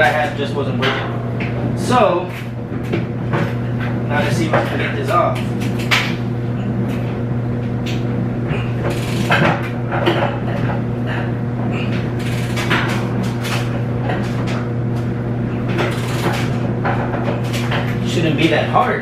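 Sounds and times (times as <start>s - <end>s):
clothes dryer humming: 0.0s - 19.0s
metallic clicks and clanks: 11.9s - 14.6s, 15.7s - 18.6s.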